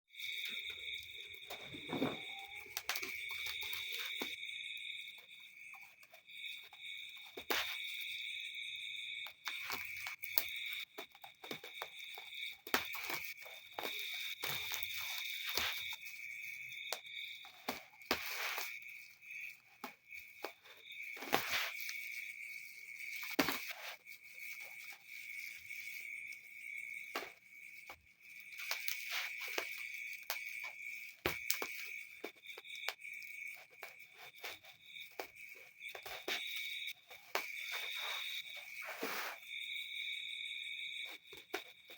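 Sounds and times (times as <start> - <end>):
high insect trill: 0.1 - 41.9
packaging rustling: 0.3 - 4.4.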